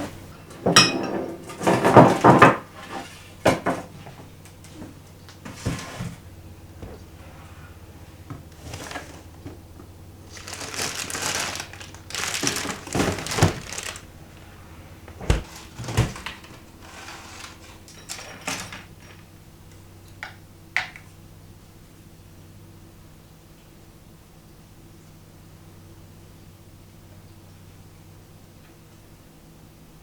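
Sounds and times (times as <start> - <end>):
low steady hum: 3.3 - 23.6
rustling: 4.8 - 19.3.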